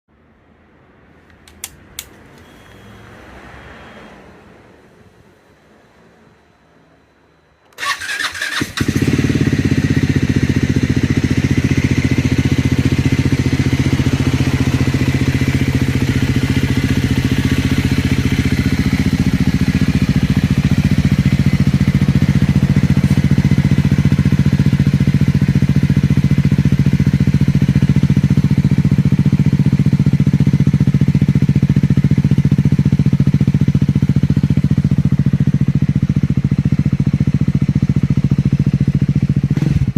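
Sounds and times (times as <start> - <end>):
motorcycle engine idling: 7.8 - 39.9.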